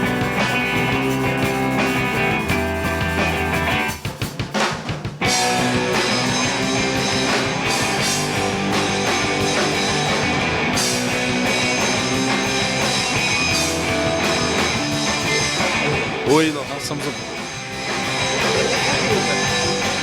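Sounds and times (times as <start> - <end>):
rock band playing: 0.0 - 20.0.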